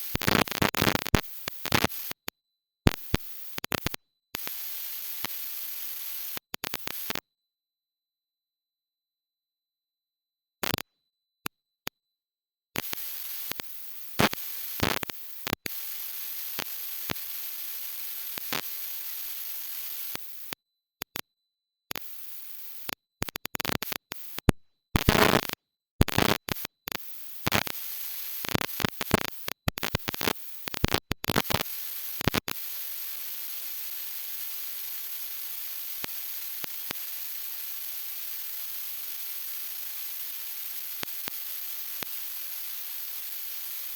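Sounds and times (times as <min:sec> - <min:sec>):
sharp clicks and crackles: 0:23.2 - 0:27.7, 0:28.4 - 0:31.6, 0:32.2 - 0:32.6
static hiss: 0:23.6 - 0:26.7, 0:27.5 - 0:35.1.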